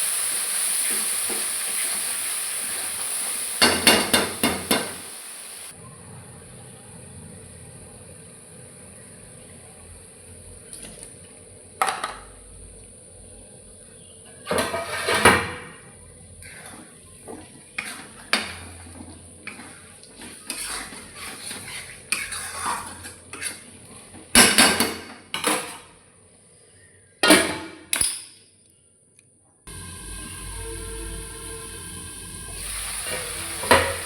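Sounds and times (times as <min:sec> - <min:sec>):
steady hiss: 0:00.0 - 0:05.8, 0:29.7 - 0:34.0
metal utensils clattering on pots: 0:03.6 - 0:05.0, 0:14.5 - 0:15.7.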